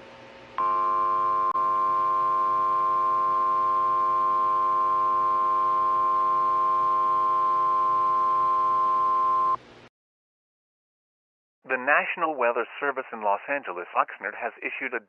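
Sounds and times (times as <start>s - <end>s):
steady warning alarm tone: 0.6s - 9.6s.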